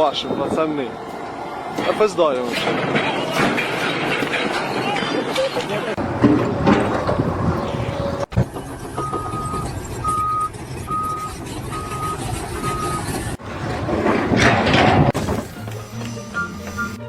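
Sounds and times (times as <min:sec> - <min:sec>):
engine running: 0:05.9 - 0:17.0
reversing alarm beeping: 0:08.8 - 0:13.1, 0:16.3 - 0:17.0.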